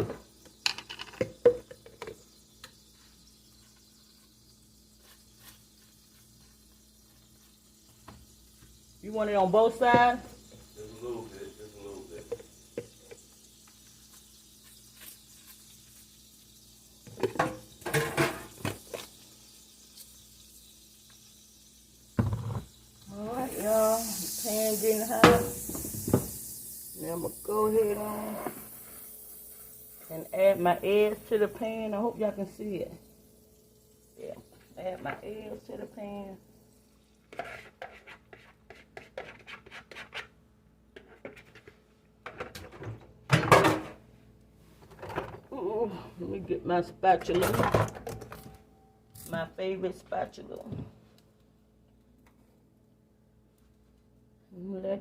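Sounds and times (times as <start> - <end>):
faint steady hum: 0.0 - 55.0
dishes and utensils clattering: 17.1 - 18.7
utensil scraping a bowl: 37.3 - 40.4.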